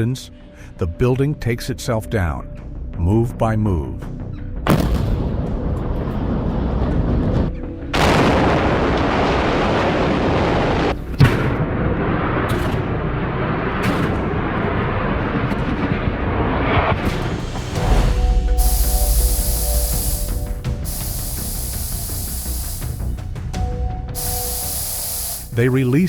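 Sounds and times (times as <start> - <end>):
building collapsing rumble: 5.6 - 18.6.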